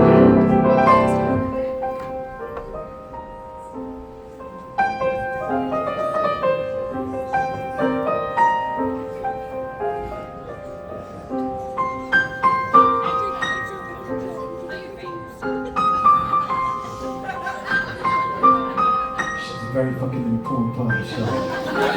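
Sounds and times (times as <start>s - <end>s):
solo piano: 0.0s - 21.9s.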